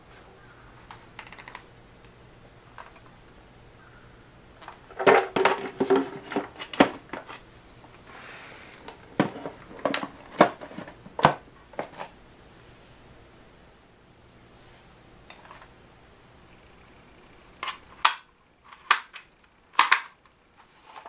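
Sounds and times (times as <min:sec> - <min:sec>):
plastic parts clicking and knocking: 0:00.9 - 0:01.7, 0:02.7 - 0:03.1, 0:04.6 - 0:07.4, 0:08.0 - 0:12.1, 0:17.6 - 0:21.0.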